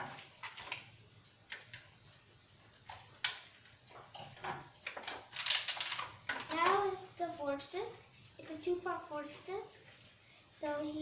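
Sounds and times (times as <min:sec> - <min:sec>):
small plastic parts clicking: 0:04.8 - 0:06.8.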